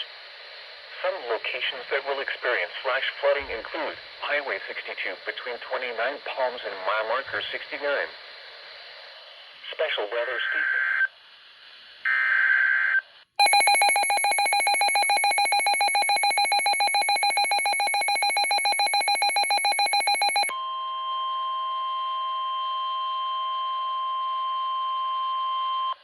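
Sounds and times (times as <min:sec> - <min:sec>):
buzzing data tone: 0:13.4 - 0:20.5
pulsing electronic alert tone: 0:13.4 - 0:20.5.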